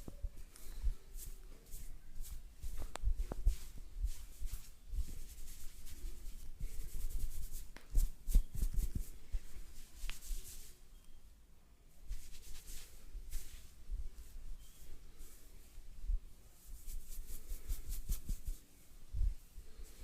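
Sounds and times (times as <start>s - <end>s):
close rubbing and scratching: 5.0s - 10.8s, 12.1s - 13.7s, 16.6s - 18.7s.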